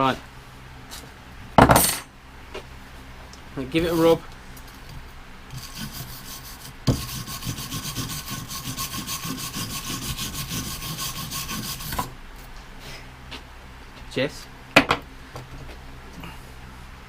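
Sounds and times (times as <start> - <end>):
brush scrubbing metal: 5.5 - 12.1.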